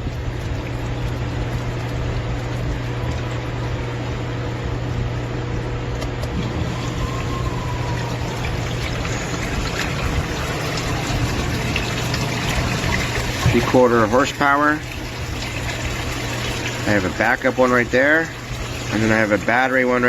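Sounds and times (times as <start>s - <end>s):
sump pump humming: 0.0s - 20.0s
water rushing and splashing: 6.3s - 20.0s.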